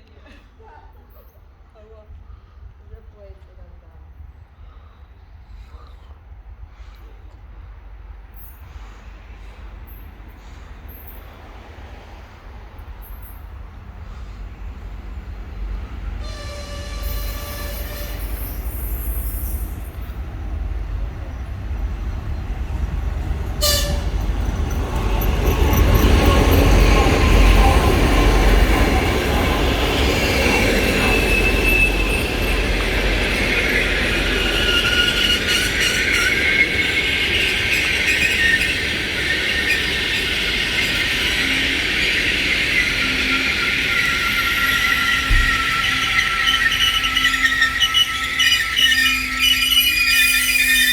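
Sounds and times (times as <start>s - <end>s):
train carriages rolling past: 0.0s - 50.9s
diesel locomotive rumble: 1.7s - 50.9s
high-pitched wheel squeal: 16.2s - 19.8s, 25.4s - 50.9s.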